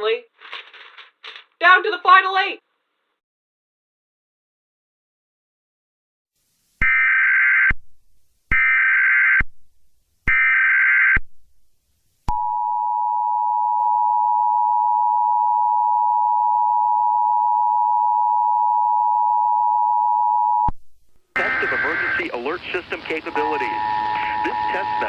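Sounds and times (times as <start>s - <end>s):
two-tone attention signal: 21.4s - 22.5s, 23.2s - 25.0s
digital header data bursts: 21.4s - 25.0s.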